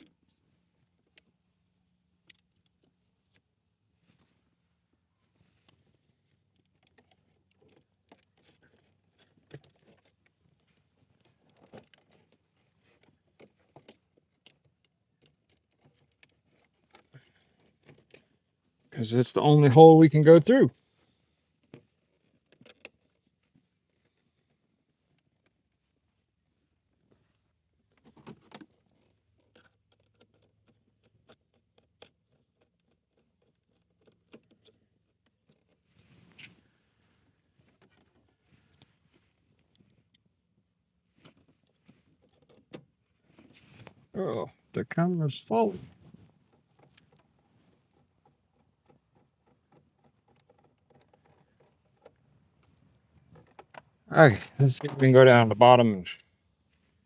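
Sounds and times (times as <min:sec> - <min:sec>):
plastic clicks and rattles: 0:06.4 - 0:18.4, 0:21.6 - 0:24.4, 0:27.9 - 0:36.5, 0:41.2 - 0:43.8, 0:46.0 - 0:54.0.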